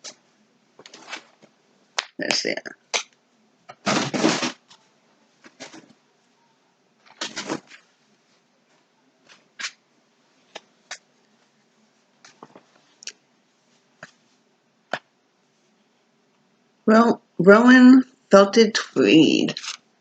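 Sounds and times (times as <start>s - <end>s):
yarn packaging rustling: 19.6s - 19.8s.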